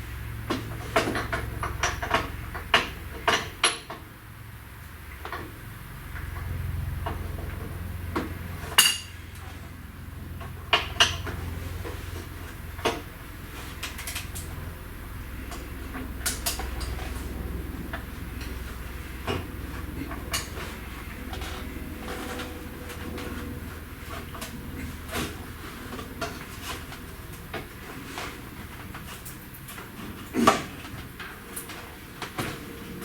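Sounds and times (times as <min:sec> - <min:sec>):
low steady hum: 0:00.0 - 0:33.0
hand tools clanking on metal: 0:08.7 - 0:09.4.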